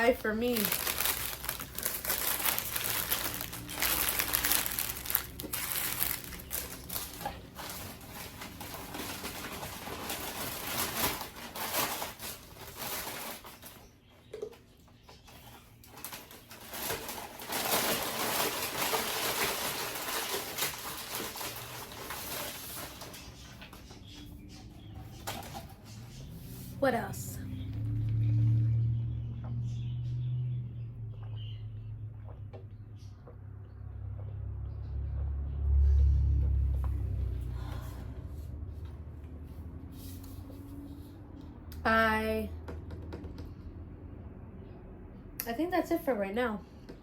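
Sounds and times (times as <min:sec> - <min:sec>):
food wrapping crinkling: 0:00.0 - 0:13.9, 0:15.4 - 0:23.8.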